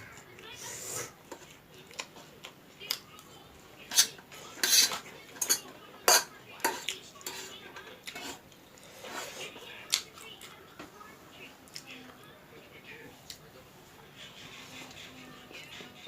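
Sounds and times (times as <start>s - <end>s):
metal cutlery clinking on a dish: 3.9s - 8.4s.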